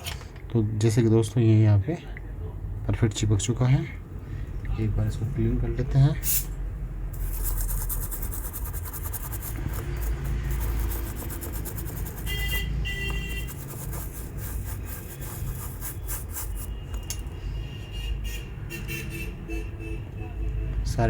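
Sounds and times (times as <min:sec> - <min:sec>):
scrubbing a circuit board: 0:07.2 - 0:17.0.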